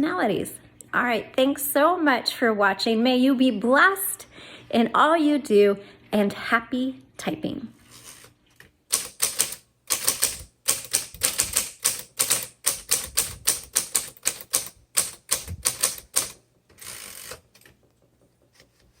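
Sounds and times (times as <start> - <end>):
typewriter carriage rasping slide: 7.9 - 8.3, 8.9 - 17.7
typewriter keys clicking: 8.9 - 17.7.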